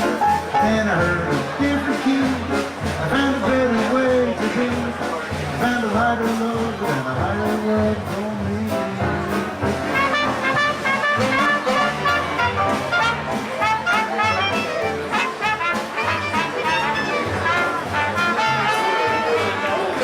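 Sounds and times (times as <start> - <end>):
jazz band with brass: 0.0 - 20.0.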